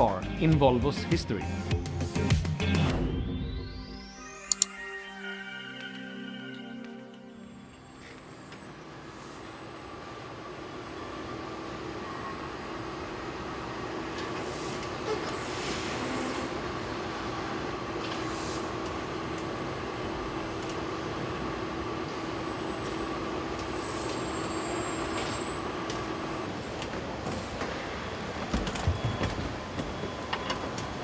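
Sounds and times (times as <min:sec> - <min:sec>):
factory machinery humming: 0:05.5 - 0:31.0
high-pitched whine: 0:15.0 - 0:17.8.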